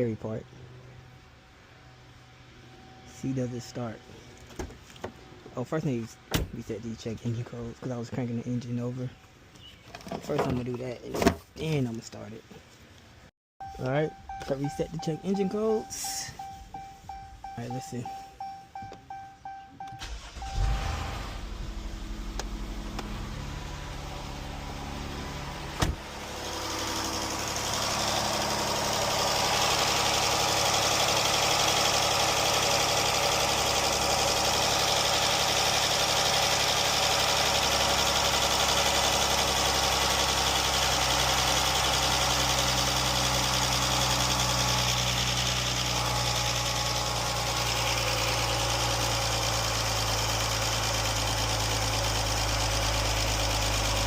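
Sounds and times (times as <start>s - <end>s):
engine cranking and idling: 14.1s - 54.0s.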